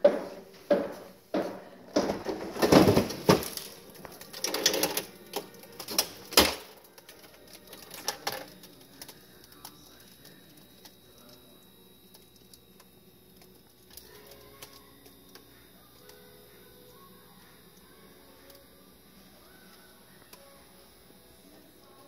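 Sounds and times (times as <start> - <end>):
ice maker clacking and knocking: 0.0 - 9.8.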